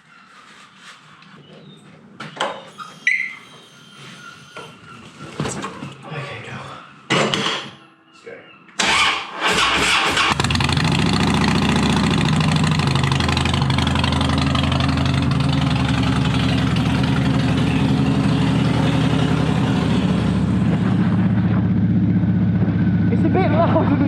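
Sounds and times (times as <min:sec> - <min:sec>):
motorcycle engine running: 0:10.1 - 0:24.0.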